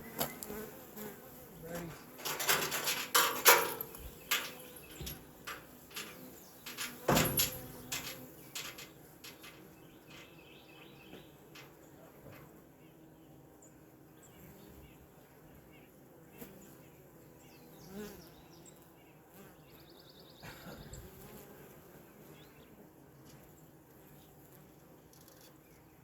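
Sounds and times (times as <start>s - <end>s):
bees humming: 0.0s - 15.6s
bee buzzing past: 0.0s - 25.7s.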